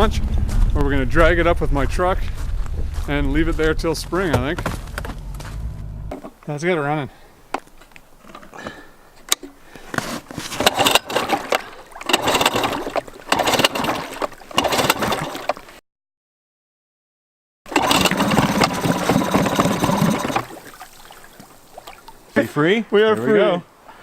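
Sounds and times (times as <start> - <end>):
outboard motor starting and running: 10.4 - 15.8, 17.7 - 21.0.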